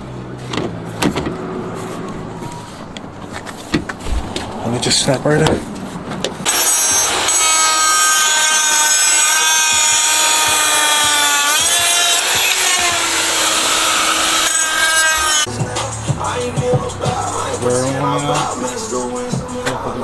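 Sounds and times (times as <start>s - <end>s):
power tool whining: 6.4s - 15.5s.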